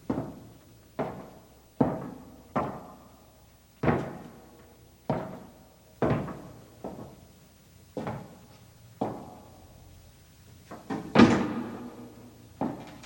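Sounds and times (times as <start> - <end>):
footsteps on wooden planks: 0.0 - 3.0, 5.1 - 7.2, 8.0 - 9.4.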